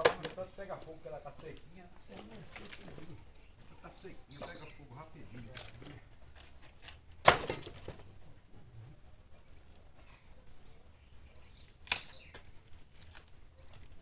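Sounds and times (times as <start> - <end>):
wood rustling and clicking: 0.0 - 3.2, 5.3 - 8.4, 11.7 - 14.0
firewood knock: 7.2 - 8.1.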